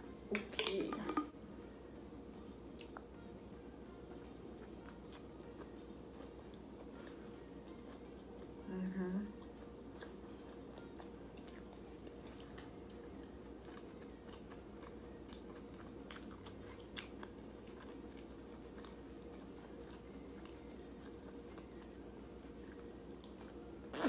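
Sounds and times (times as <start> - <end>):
steady low hum: 0.0 - 24.0
person chewing food: 4.1 - 8.6, 9.4 - 24.0
small crunches and mouth clicks: 22.6 - 24.0.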